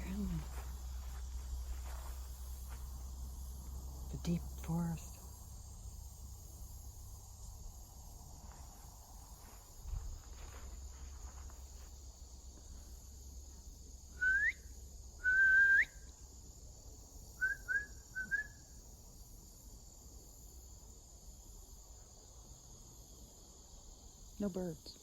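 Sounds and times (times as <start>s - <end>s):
crickets trilling: 0.0s - 25.0s
person whistling: 14.2s - 14.6s, 15.2s - 15.9s.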